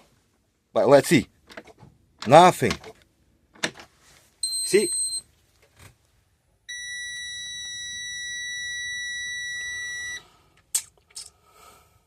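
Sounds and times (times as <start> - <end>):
high-pitched warning buzzer beep: 4.4 - 5.2, 6.7 - 10.2.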